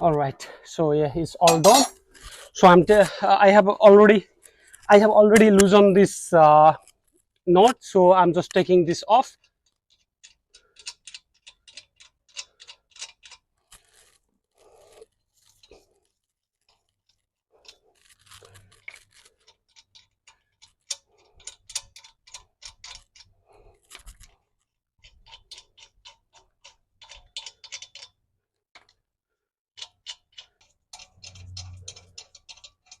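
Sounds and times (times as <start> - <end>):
wheel nuts spinning metallic clicks: 8.3 - 14.2, 16.7 - 23.3, 25.0 - 28.2, 29.8 - 33.0
low steady hum: 31.2 - 32.1.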